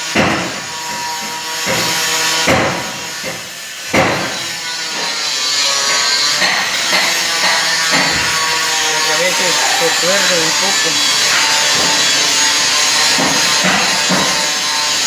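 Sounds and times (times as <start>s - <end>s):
sharp knocks: 6.4s - 8.7s, 11.0s - 14.6s.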